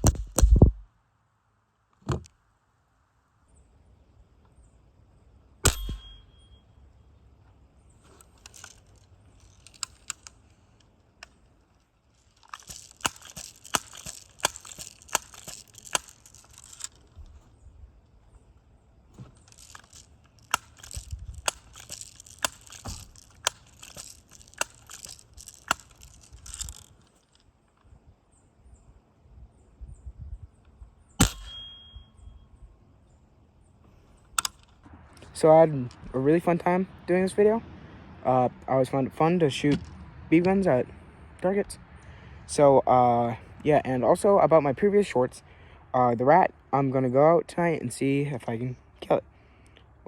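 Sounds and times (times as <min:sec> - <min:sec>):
bb gun crack with ringing ping: 0:05.6 - 0:06.6, 0:31.2 - 0:32.3
rustling: 0:07.4 - 0:28.0
small irregular clicks: 0:07.4 - 0:28.0, 0:33.8 - 0:36.1.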